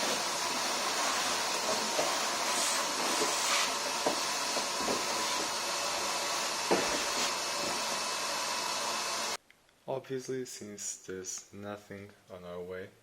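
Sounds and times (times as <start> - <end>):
vacuum cleaner running: 0.0 - 9.4.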